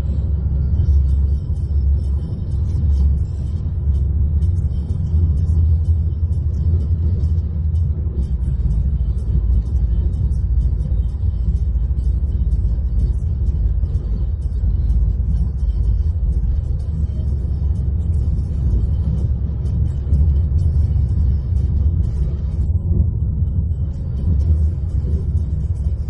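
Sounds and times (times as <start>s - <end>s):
faint music: 0.0s - 26.0s
low rumble inside a car: 0.0s - 26.0s.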